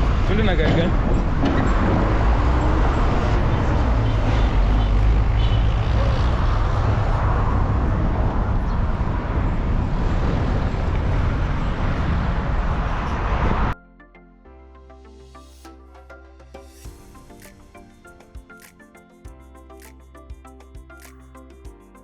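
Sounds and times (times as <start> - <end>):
highway traffic rumble: 0.0 - 13.8
vehicles passing close by: 0.0 - 13.8.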